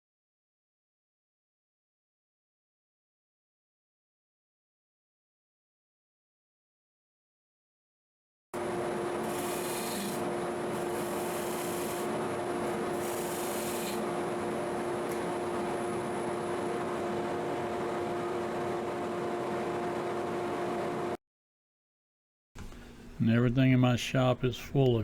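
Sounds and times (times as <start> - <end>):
wood lathe humming: 8.6 - 21.2
turning tool scraping wood: 8.9 - 14.2.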